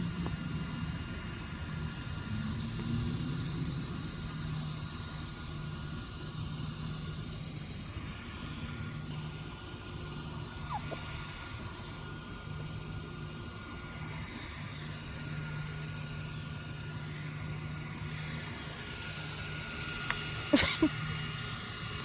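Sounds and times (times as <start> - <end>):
on-off hum: 0.0 - 22.0
faint high squeak: 10.7 - 11.0.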